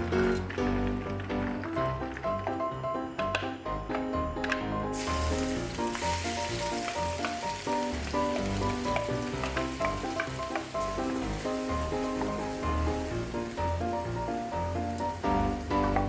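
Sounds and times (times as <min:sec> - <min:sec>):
background music: 0:00.0 - 0:16.0
food sizzling in hot oil: 0:04.9 - 0:16.0.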